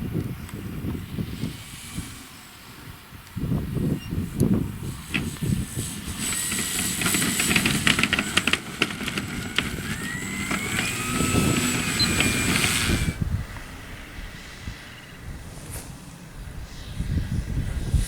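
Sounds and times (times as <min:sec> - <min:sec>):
model airplane motor whine: 0:00.1 - 0:18.0
rushing noise: 0:04.7 - 0:18.0.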